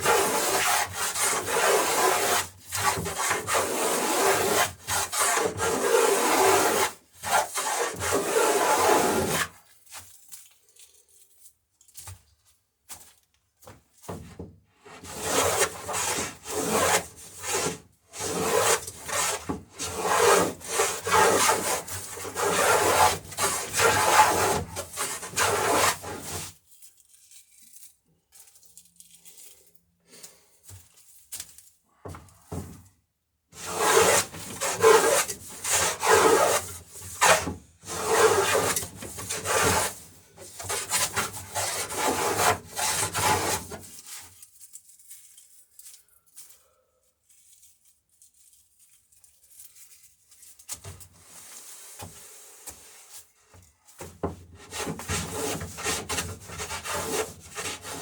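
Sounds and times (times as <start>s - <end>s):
hand tool cutting wood: 0.0s - 9.5s, 14.9s - 26.5s, 33.6s - 43.9s, 54.0s - 58.0s.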